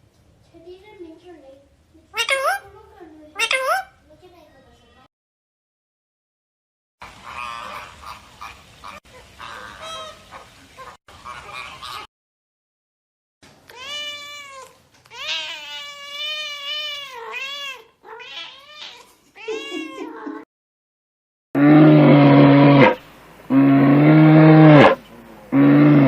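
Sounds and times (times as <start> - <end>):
cat meowing: 13.7 - 20.4
loud deep animal calls: 21.6 - 26.0.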